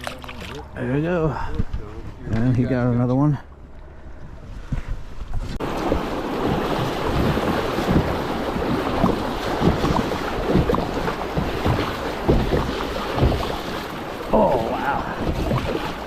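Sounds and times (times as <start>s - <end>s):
rushing water: 0.0s - 0.9s, 5.6s - 16.0s
low thumps: 3.5s - 16.0s
wind buffeting microphone: 4.1s - 16.0s.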